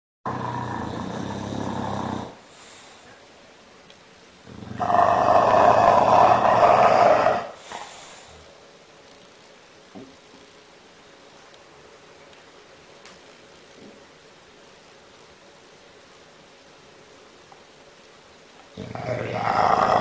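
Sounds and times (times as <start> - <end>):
dog snoring: 0.3 - 2.5, 4.5 - 8.5, 18.8 - 20.0.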